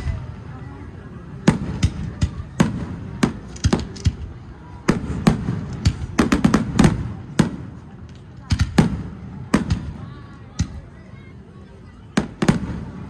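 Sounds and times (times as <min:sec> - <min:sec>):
fireworks bursting: 0:01.4 - 0:11.0, 0:12.1 - 0:13.0.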